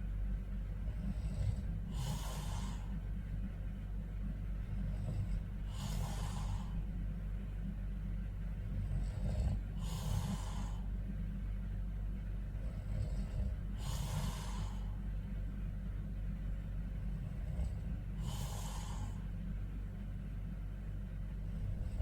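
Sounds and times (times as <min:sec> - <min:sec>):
low hum: 0:00.0 - 0:22.0
man snoring: 0:00.8 - 0:02.9, 0:04.6 - 0:06.8, 0:08.7 - 0:10.9, 0:12.5 - 0:15.0, 0:17.0 - 0:19.2, 0:21.5 - 0:22.0.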